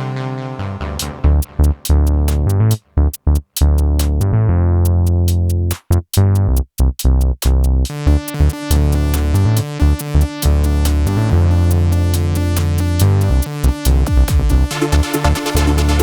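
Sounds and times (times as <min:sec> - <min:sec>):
electronic music with synth bass: 0:00.0 - 0:06.5, 0:07.6 - 0:16.0.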